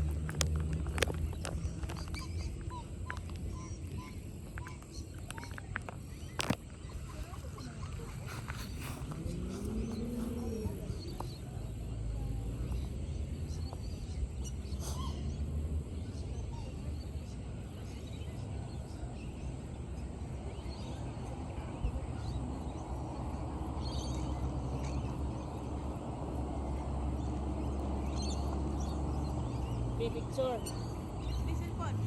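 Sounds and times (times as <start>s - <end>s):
low rumble and hiss: 0.0s - 32.0s.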